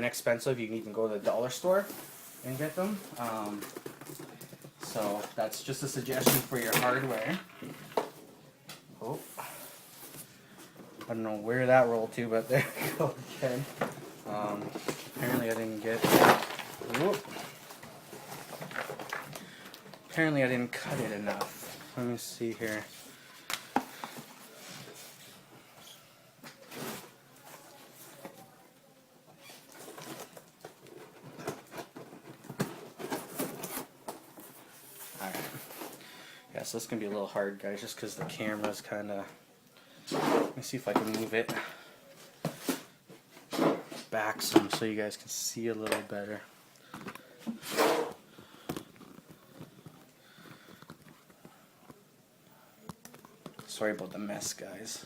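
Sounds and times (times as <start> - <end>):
cardboard rustling and scraping: 12.2 - 19.3, 29.5 - 36.0, 47.5 - 51.4.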